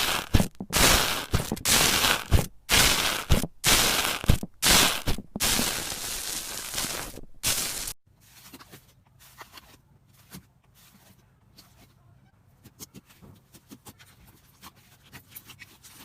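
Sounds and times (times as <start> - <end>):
faint clicks and pops: 0.0 - 8.0
slime crackling: 0.0 - 8.0.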